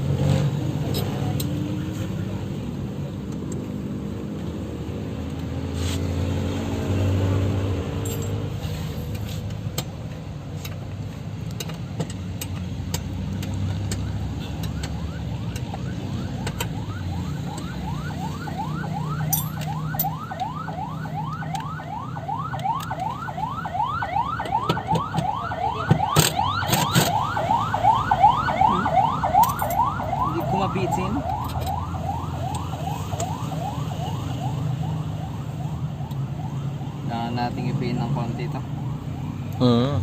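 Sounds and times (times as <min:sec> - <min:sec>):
electronic siren yelping: 0:13.7 - 0:40.0.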